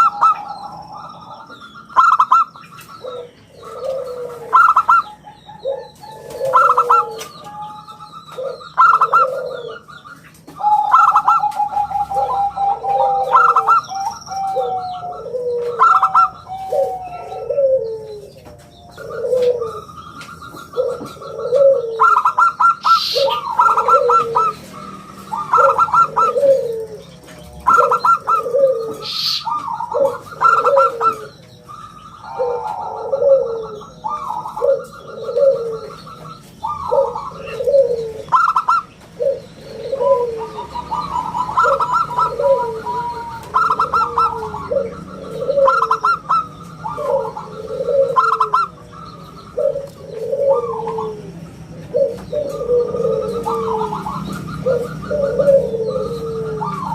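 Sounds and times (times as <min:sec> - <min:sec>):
dove cooing: 0:00.0 - 0:56.9
rapid high chirping: 0:22.1 - 0:32.4.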